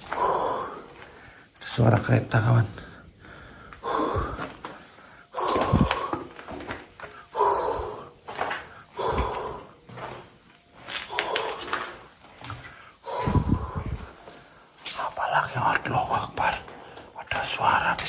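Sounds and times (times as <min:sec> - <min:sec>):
crickets and insects chirping: 0:00.0 - 0:18.0
footsteps crunching on debris: 0:04.4 - 0:07.3, 0:08.1 - 0:13.0.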